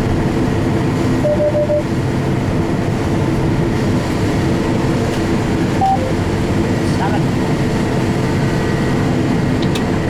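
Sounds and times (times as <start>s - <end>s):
combine harvester running: 0.0s - 10.0s
short beeps: 1.2s - 1.9s, 5.8s - 6.2s.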